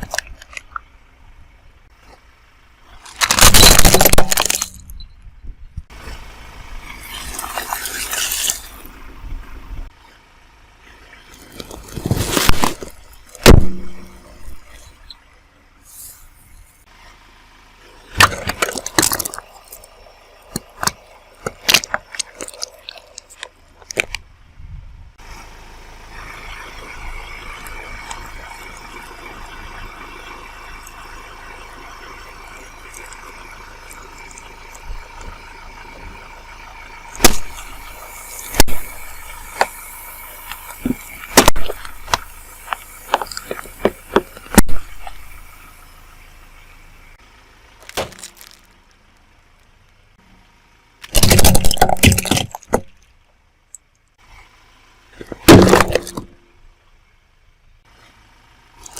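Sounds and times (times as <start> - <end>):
objects crushed under tyre: 2.9 - 5.0, 11.3 - 15.0, 18.1 - 24.2, 37.1 - 45.4, 47.8 - 48.9, 51.0 - 53.1, 55.2 - 56.5.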